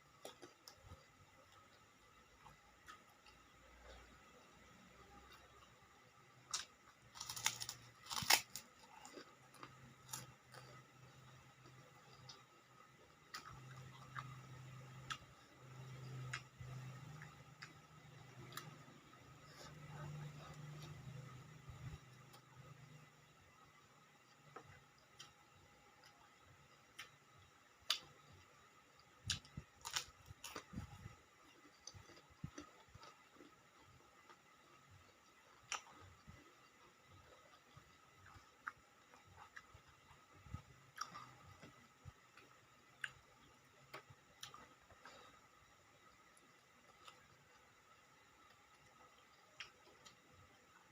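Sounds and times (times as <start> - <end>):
soft chewing: 0.0 - 50.9
crackers crunching: 6.4 - 12.6, 29.3 - 30.9
crisp crunches of eating: 6.5 - 12.6, 29.3 - 40.2.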